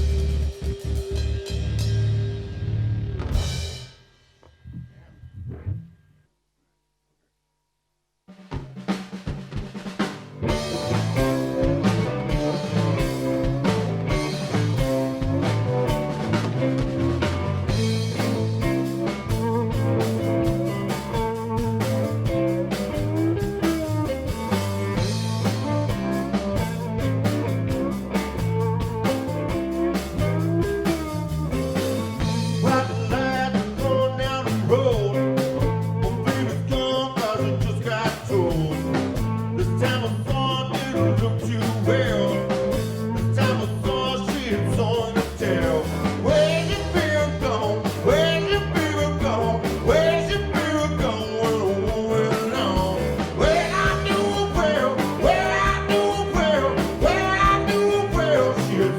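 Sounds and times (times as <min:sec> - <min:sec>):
drum kit beat: 0:00.0 - 0:02.3, 0:08.3 - 0:58.9
lead guitar with pitch bends: 0:00.0 - 0:03.8, 0:04.5 - 0:06.0, 0:10.4 - 0:58.9
electric guitar: 0:00.0 - 0:03.9, 0:10.0 - 0:58.9
bass guitar: 0:00.0 - 0:06.2, 0:09.4 - 0:58.9.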